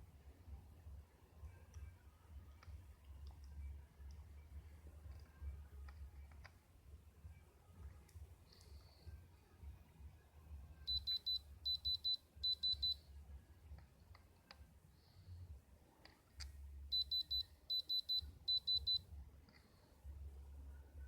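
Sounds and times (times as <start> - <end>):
faint low hum: 0.0 - 21.0
high electronic beeps: 10.9 - 13.0, 16.9 - 19.0.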